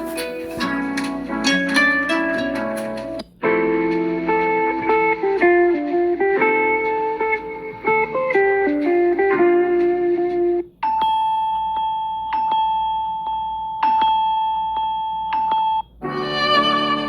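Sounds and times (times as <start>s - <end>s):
ringtone with strings: 0.0s - 8.5s, 10.8s - 17.0s
melodic guitar ringtone: 0.0s - 17.0s
chime-like ringtone with taps: 10.8s - 16.7s.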